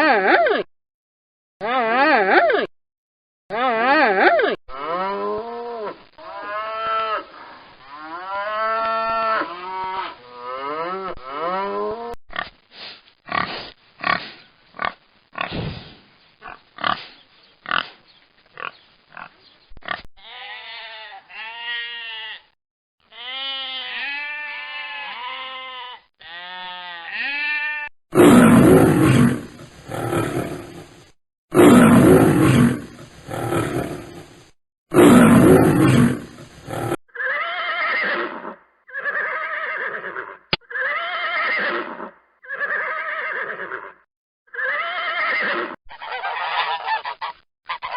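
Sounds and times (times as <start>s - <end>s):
animal grunts: 28.2s - 37.0s.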